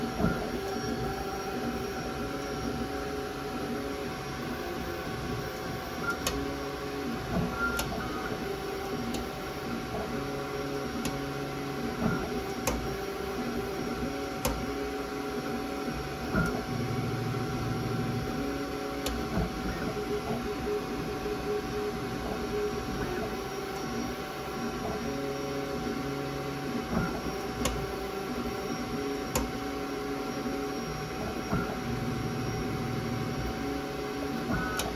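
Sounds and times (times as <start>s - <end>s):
printer motor hum: 0.0s - 34.9s
sharp printer clicks: 12.0s - 12.9s, 29.3s - 29.6s.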